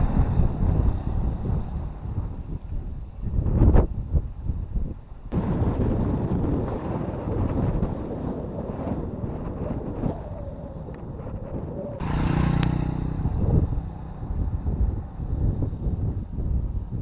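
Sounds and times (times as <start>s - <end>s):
motorcycle engine rumble: 0.0s - 5.7s, 11.5s - 17.0s
wind buffeting microphone: 0.0s - 17.0s.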